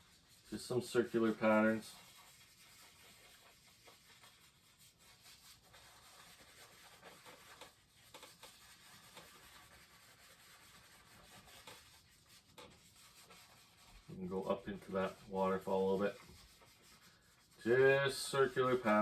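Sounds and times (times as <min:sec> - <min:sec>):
paintbrush scrubbing on canvas: 0:00.0 - 0:19.0.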